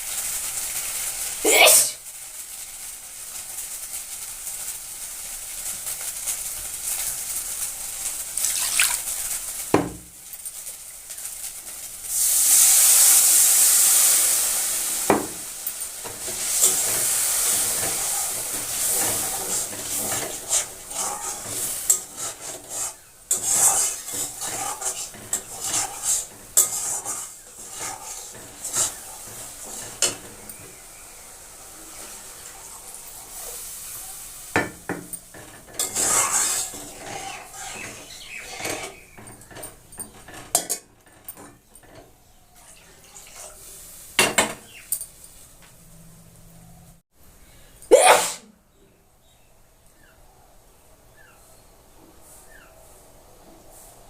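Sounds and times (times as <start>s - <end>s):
food sizzling in a pan: 0.0s - 45.6s
spatula scraping a pan: 16.0s - 30.8s, 31.7s - 42.1s, 42.9s - 43.9s.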